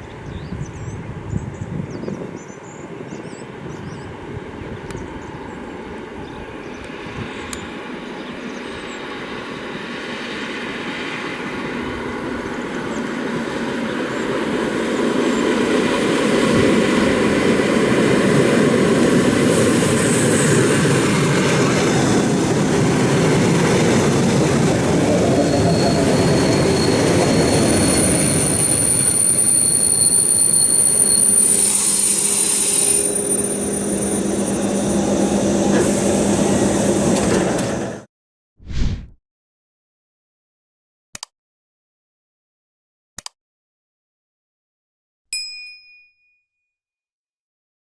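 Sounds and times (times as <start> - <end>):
train wheels rumbling on rails: 9.1 - 38.1
high brake squeal: 18.7 - 21.6, 25.3 - 36.7.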